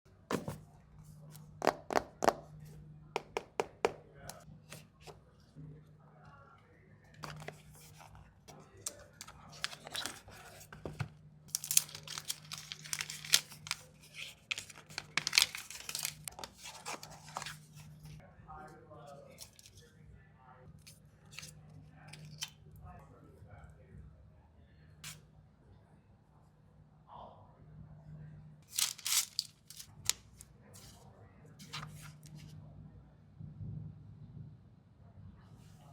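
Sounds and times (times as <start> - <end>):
packaging ripping and rustling: 9.0 - 10.7, 11.5 - 17.6, 28.7 - 30.4
plastic wrap and cardboard crinkling: 11.5 - 17.6, 28.7 - 30.4.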